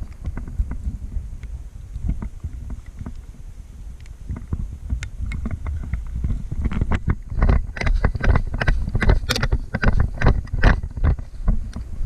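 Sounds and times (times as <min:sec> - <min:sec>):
microphone handling noise: 0:00.0 - 0:12.0
wind rumble on microphone: 0:00.0 - 0:12.0
knocks and clatters: 0:04.3 - 0:11.9.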